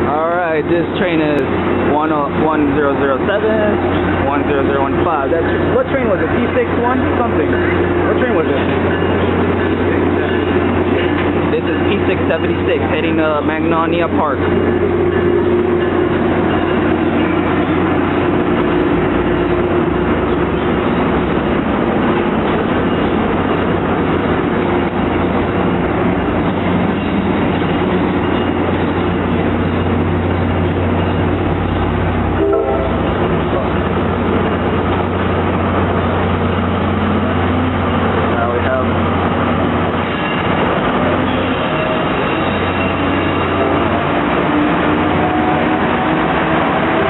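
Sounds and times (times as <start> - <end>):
train rumble of wheels and engine: 0.0 - 47.0.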